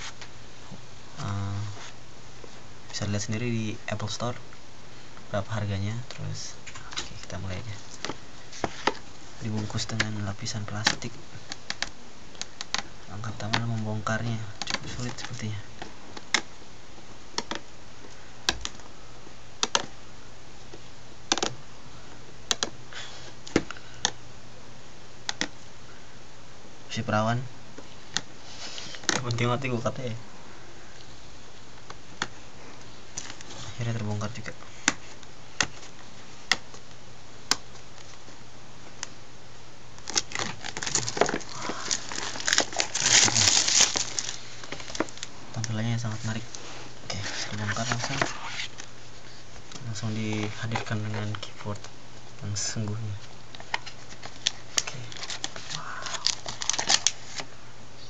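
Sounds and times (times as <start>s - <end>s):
clicks and taps opening packaging: 40.0s - 45.8s, 53.6s - 57.2s
packaging rustle: 40.0s - 51.6s, 53.5s - 57.5s.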